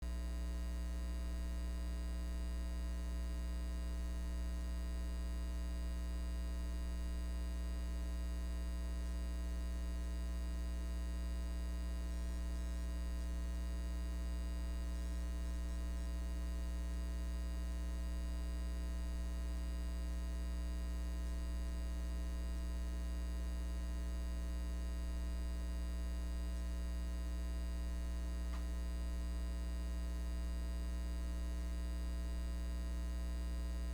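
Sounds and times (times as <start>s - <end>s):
electrical mains hum: 0.0s - 33.9s.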